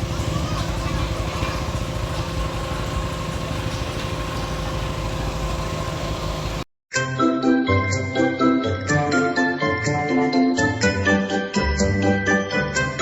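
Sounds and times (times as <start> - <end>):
motor engine idling: 0.0 - 6.7
jingly music: 6.9 - 13.0.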